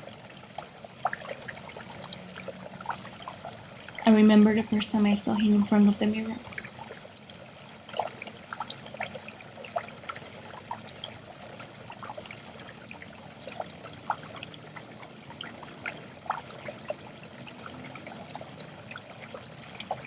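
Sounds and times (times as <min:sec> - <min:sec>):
water trickling into sink: 0:00.0 - 0:20.0
water drops plinking: 0:02.8 - 0:06.7.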